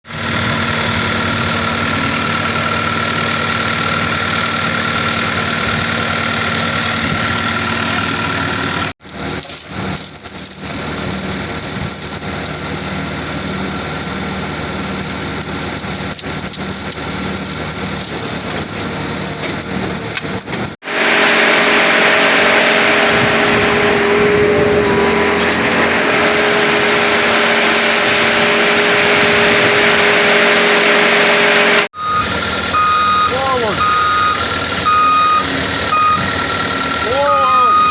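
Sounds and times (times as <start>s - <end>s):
heavy machine engine running: 0.1s - 37.9s
sharp metallic clanks: 14.8s - 20.8s.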